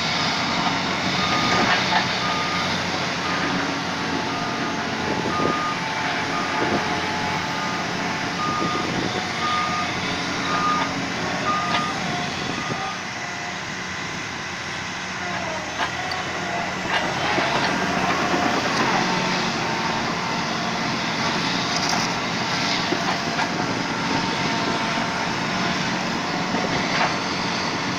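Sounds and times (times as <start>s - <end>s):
bulldozer diesel engine running: 0.0s - 27.9s
reversing alarm beeping: 1.1s - 3.6s, 4.2s - 13.1s.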